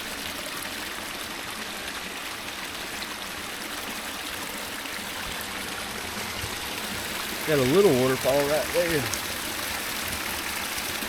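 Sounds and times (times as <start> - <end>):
water splashing over rocks: 0.0 - 11.0.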